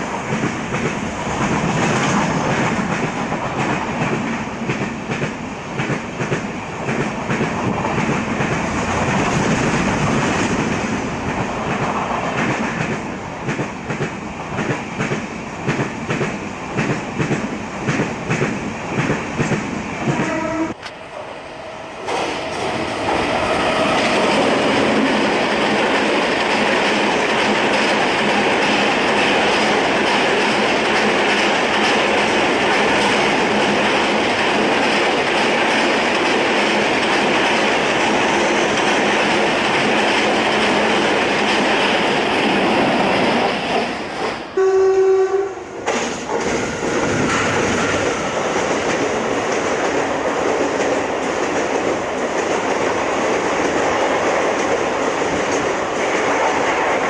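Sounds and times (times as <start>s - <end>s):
train wheels on rails: 0.0s - 57.0s
train horn: 20.1s - 20.9s, 44.6s - 45.7s.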